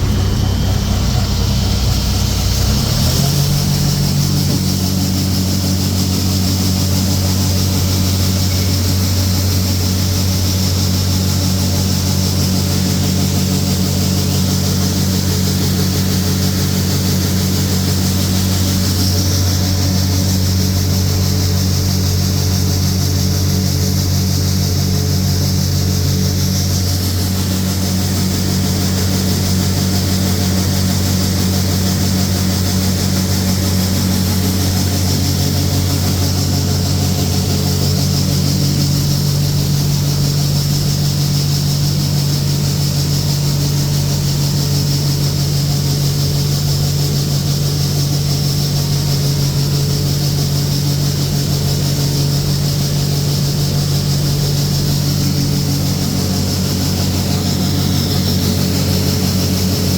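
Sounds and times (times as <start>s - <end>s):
farm machine engine droning: 0.0s - 59.9s.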